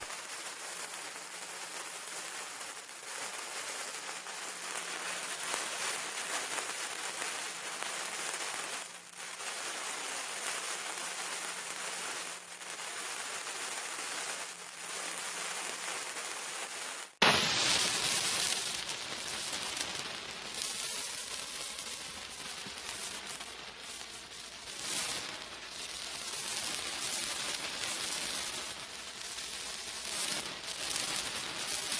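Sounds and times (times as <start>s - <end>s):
loud burst with whoosh: 17.2s - 18.6s
fuse sizzling hiss: 17.2s - 31.9s.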